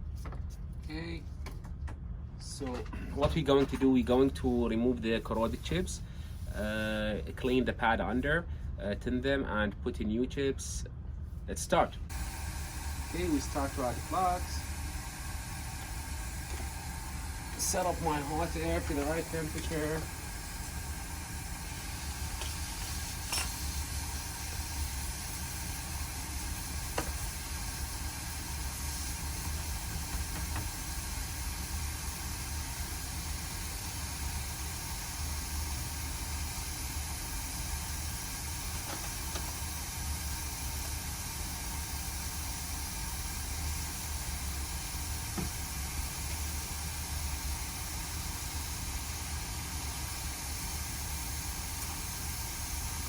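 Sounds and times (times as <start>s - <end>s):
hot air blowing hiss: 12.1s - 53.0s.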